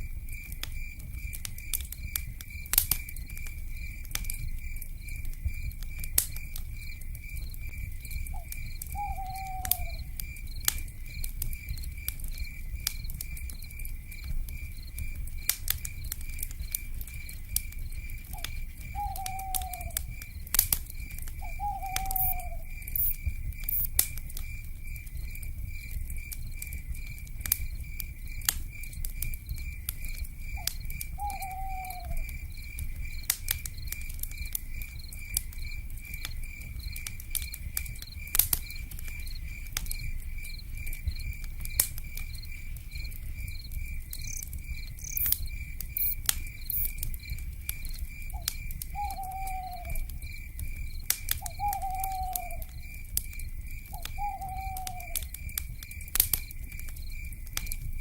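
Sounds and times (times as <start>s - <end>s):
fire crackling and popping: 0.0s - 58.0s
owl hooting: 8.3s - 10.1s, 18.9s - 20.0s, 21.4s - 22.7s, 31.2s - 32.2s, 48.3s - 50.0s, 51.5s - 52.7s, 53.9s - 55.2s
pulsing insect trill: 43.4s - 47.4s.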